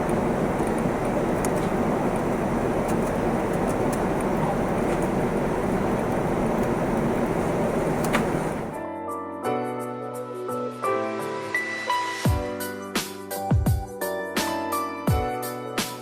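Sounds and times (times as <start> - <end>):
faint clicks: 0.0 - 8.8
jet cabin rushing noise: 0.0 - 8.8.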